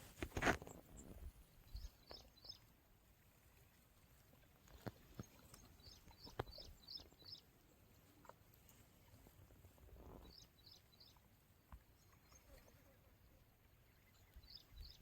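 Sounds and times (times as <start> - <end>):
small bird chirping: 1.7 - 2.6, 5.2 - 7.4, 10.2 - 11.2.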